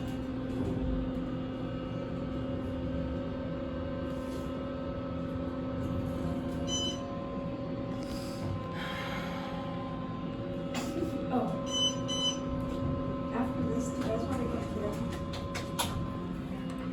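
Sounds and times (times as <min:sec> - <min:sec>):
elevator mechanical hum: 0:00.0 - 0:16.9
high electronic beep: 0:06.6 - 0:07.0, 0:11.7 - 0:12.4.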